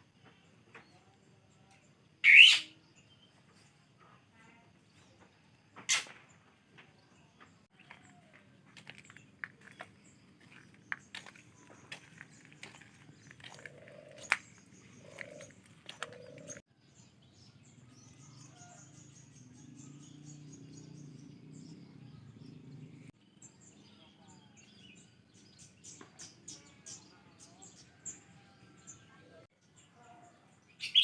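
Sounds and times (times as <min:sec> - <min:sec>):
bird trilling: 0:02.2 - 0:02.7, 0:10.5 - 0:16.6
goats chewing leafy fodder: 0:07.9 - 0:16.6.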